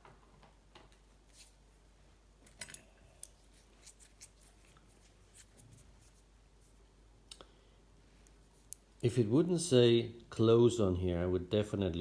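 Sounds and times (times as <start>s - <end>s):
clicks of metal parts and tools: 2.5s - 3.4s.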